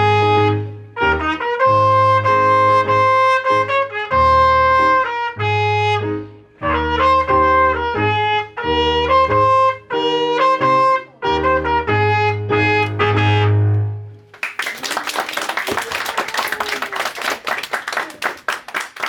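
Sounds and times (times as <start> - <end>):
audience applauding: 14.3 - 19.0.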